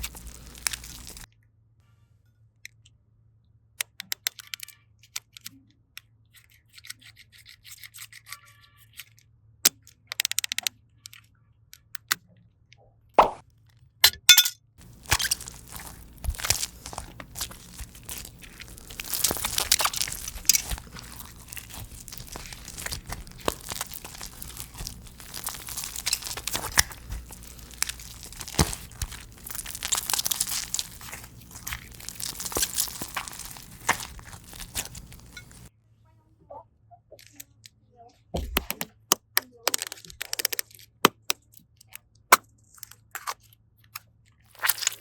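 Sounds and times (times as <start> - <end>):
slime crackling and popping: 0.0 - 1.3, 14.8 - 35.7, 39.6 - 40.6, 44.6 - 45.0.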